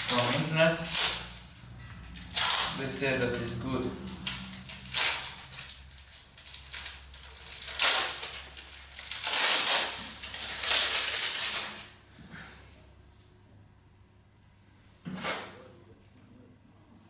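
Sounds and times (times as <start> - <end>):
crinkling and rustling of packaging: 0.0 - 12.0.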